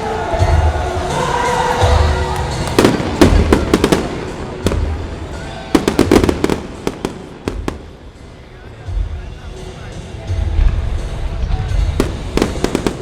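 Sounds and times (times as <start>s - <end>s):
fireworks bursting with sharp bangs: 2.3s - 8.3s, 10.5s - 13.0s.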